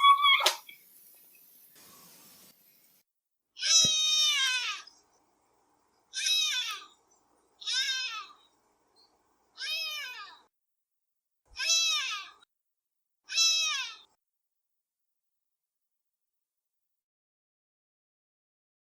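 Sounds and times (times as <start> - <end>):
cat meowing: 3.6 - 4.9, 6.1 - 7.0, 7.6 - 8.5, 9.6 - 10.5, 11.6 - 12.4, 13.3 - 14.1.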